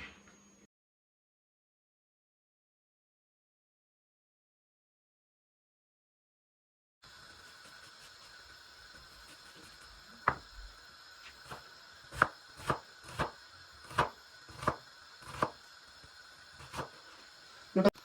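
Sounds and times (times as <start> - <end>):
knife chopping on cutting board: 10.2 - 10.4, 11.5 - 15.6, 16.6 - 17.0.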